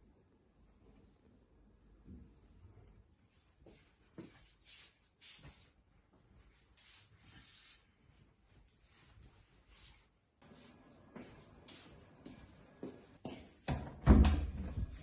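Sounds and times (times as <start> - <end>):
faint scratching strokes: 3.3 - 12.7.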